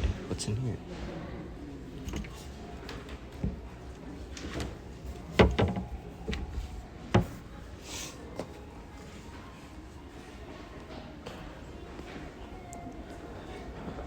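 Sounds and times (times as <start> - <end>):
cabinet doors and drawers knocking: 5.2 - 6.6, 7.2 - 7.4.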